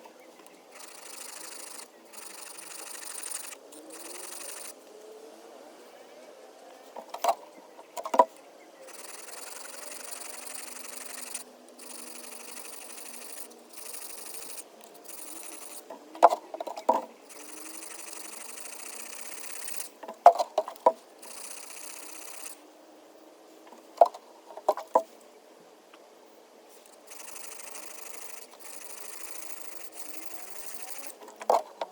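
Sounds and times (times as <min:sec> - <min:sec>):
sharp clicks and knocks: 0:07.0 - 0:22.5, 0:23.7 - 0:25.1.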